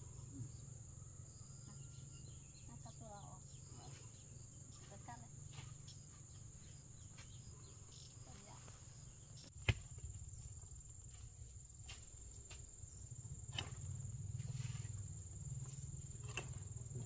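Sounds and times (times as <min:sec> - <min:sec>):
insects trilling: 0:00.0 - 0:17.0.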